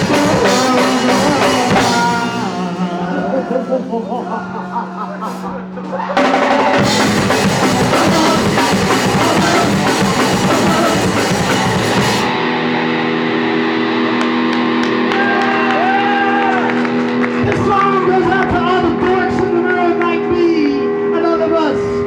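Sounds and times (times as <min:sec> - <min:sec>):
drum kit: 0:00.0 - 0:04.3, 0:05.2 - 0:12.6
punk rock band playing live: 0:00.0 - 0:21.1
distorted electric guitar: 0:00.0 - 0:22.0.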